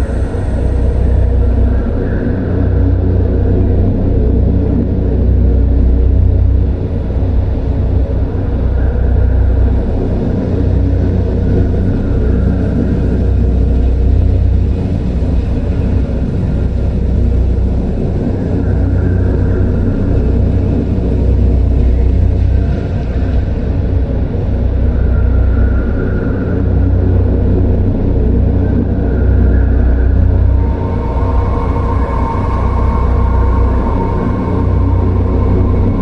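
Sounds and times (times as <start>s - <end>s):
deep droning rumble: 0.0s - 36.0s
faint higher swell: 29.6s - 36.0s.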